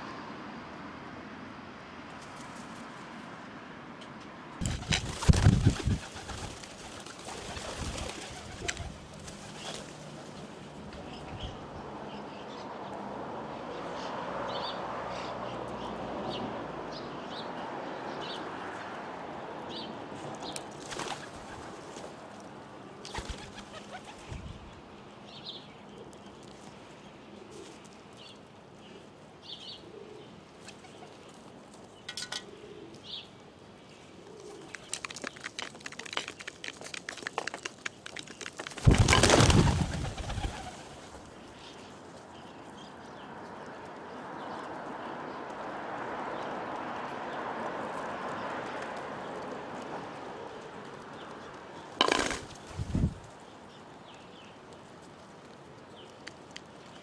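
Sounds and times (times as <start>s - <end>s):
wing flapping: 4.6s - 10.6s, 20.7s - 22.4s, 23.0s - 24.7s, 34.5s - 41.5s, 52.0s - 53.3s
pigeons cooing: 4.6s - 11.1s, 22.9s - 24.4s, 32.1s - 33.1s, 34.1s - 41.5s, 52.0s - 53.2s.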